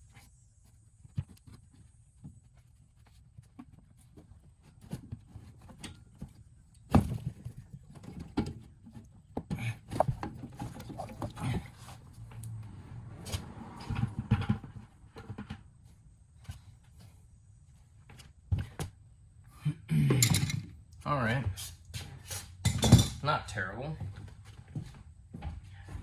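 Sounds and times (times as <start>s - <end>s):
hand tools knocking and clanking: 22.6s - 23.2s.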